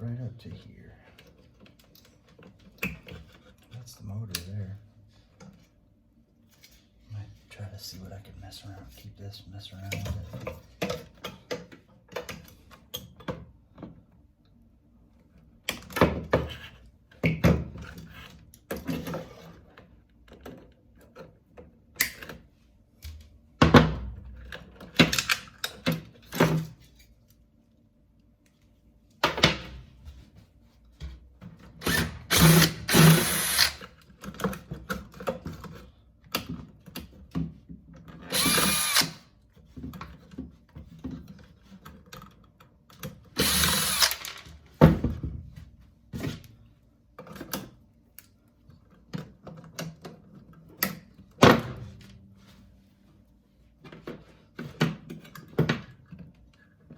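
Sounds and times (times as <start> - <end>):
cordless drill running: 31.8 - 33.8, 38.3 - 39.3, 43.4 - 44.4.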